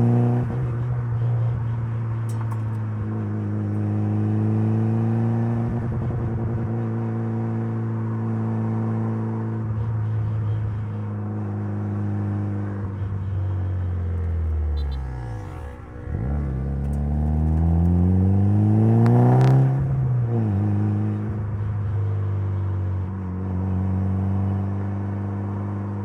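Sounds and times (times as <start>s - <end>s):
car engine running: 0.0s - 6.8s, 9.8s - 19.9s.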